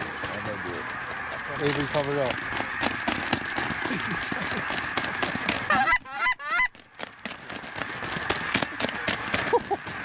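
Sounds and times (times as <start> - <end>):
geese honking: 0.0 - 6.8.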